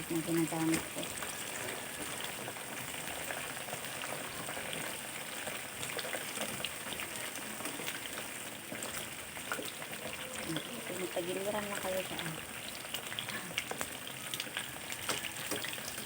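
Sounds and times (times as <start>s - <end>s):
food sizzling in hot oil: 0.0s - 16.0s.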